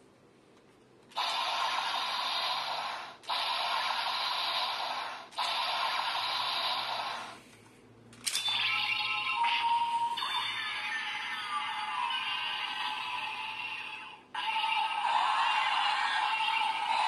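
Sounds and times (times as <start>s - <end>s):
static-like noise bursts: 1.2s - 7.4s.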